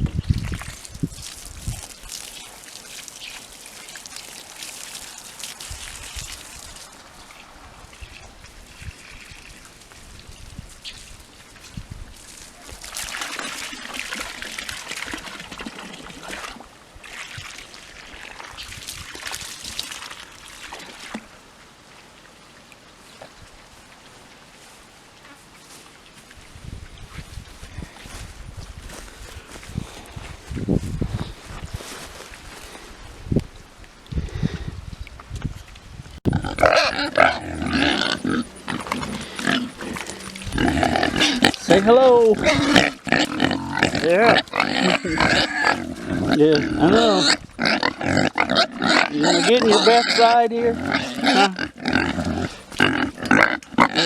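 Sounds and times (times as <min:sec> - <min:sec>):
water pouring and splashing: 0:00.0 - 0:24.7, 0:35.1 - 0:47.9
pigs grunting: 0:36.3 - 0:54.0.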